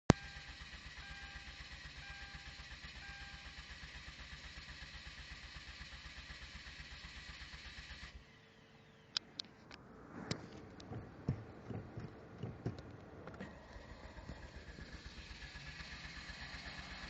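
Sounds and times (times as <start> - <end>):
starter cranking engine: 0.1 - 9.4, 11.7 - 17.0.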